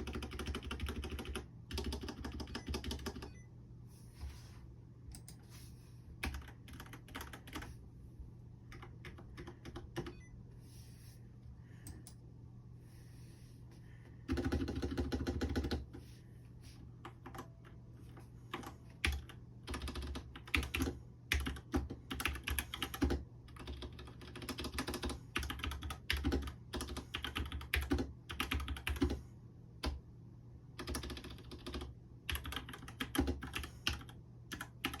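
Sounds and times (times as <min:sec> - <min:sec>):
mechanical keyboard typing: 0:00.0 - 0:03.4, 0:06.2 - 0:07.8, 0:08.7 - 0:10.2, 0:14.3 - 0:16.0, 0:18.5 - 0:29.2, 0:30.8 - 0:35.0.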